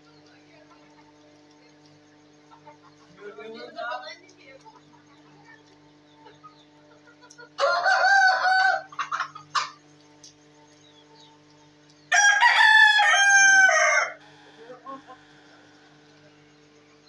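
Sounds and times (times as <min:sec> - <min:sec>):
rooster crowing: 0:07.6 - 0:09.0, 0:12.1 - 0:15.7.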